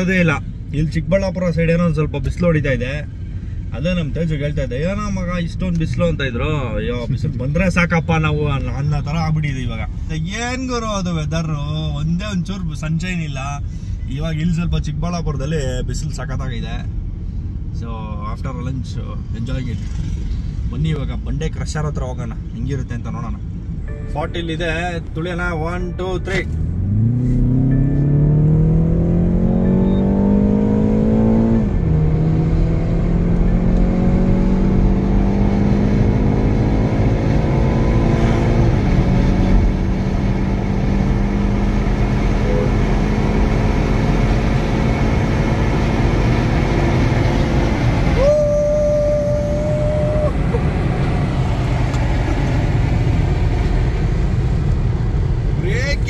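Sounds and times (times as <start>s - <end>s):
steady single tone: 23.8s - 24.7s, 27.0s - 30.5s
car engine accelerating hard: 26.2s - 56.0s.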